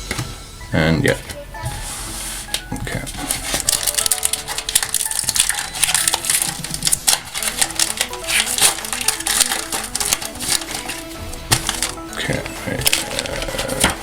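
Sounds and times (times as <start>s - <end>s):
background music: 0.0s - 14.0s
foil wrapper crinkling: 1.0s - 14.0s.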